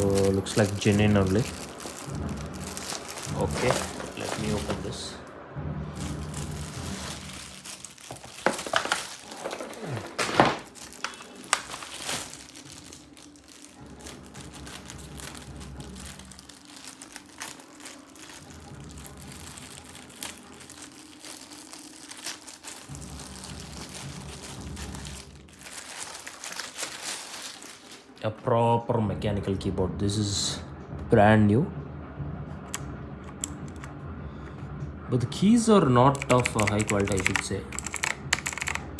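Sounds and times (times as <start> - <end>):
plastic and paper packaging crinkling: 0.0 - 5.2, 5.9 - 28.3, 36.1 - 38.9.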